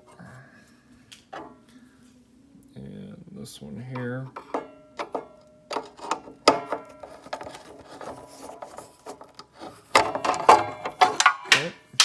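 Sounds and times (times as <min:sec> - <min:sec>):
knocks and clatter: 0:04.4 - 0:12.0.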